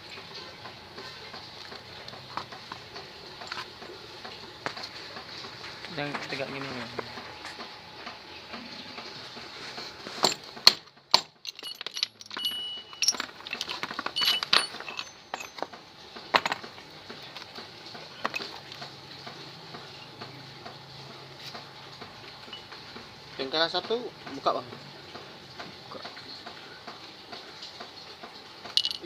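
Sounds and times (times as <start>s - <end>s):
small metal pieces clinking: 11.1s - 15.8s, 28.7s - 29.0s.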